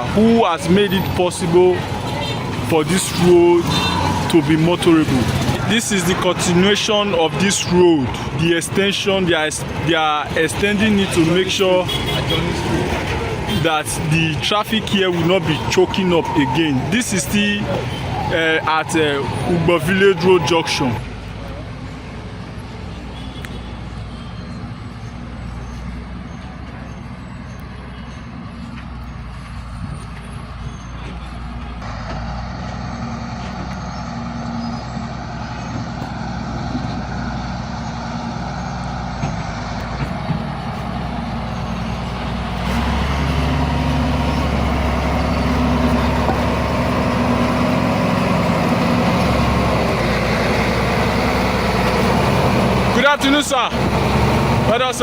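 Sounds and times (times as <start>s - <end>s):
heavy engine passing close: 0.0s - 22.8s, 24.5s - 55.0s
road traffic: 0.0s - 55.0s.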